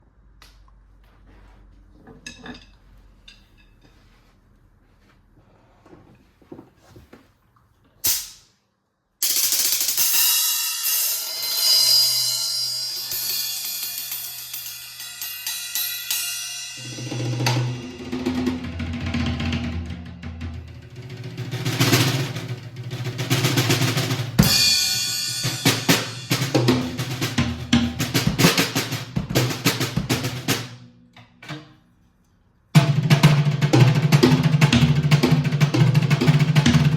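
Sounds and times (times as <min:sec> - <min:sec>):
cymbals ringing: 0:09.2 - 0:18.6, 0:23.8 - 0:29.0
drum kit playing: 0:09.2 - 0:30.9, 0:32.8 - 0:36.9.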